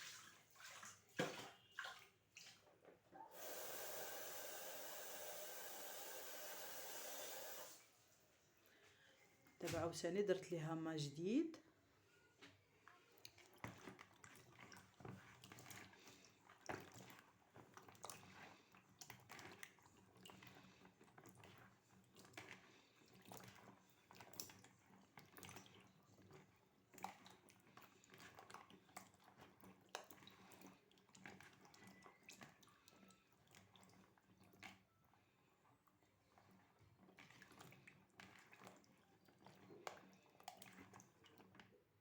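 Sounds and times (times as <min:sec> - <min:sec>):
splashing and squelching in water: 0:00.0 - 0:02.8, 0:13.1 - 0:32.5, 0:37.1 - 0:41.6
small clicks and drips: 0:00.0 - 0:03.2, 0:12.3 - 0:42.0.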